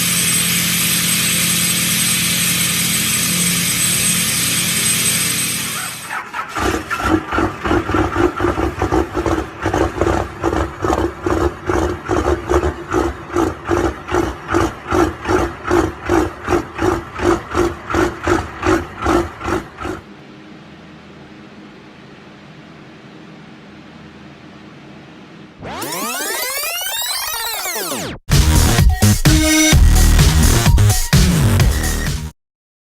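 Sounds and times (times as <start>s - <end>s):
starter motor whine: 0.0s - 10.2s
diesel engine cranking: 0.0s - 20.0s.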